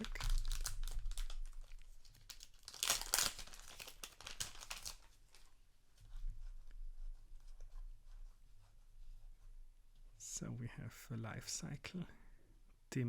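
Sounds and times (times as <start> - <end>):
card pack wrapper crinkling and tearing: 0.0 - 5.5.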